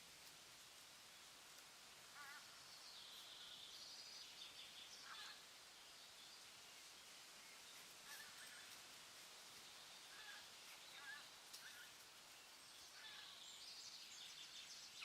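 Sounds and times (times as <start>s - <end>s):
forest ambience hiss: 0.0s - 15.0s
faint bird calls: 2.0s - 3.8s, 4.9s - 5.6s, 8.0s - 8.8s, 10.0s - 12.0s, 12.8s - 13.7s.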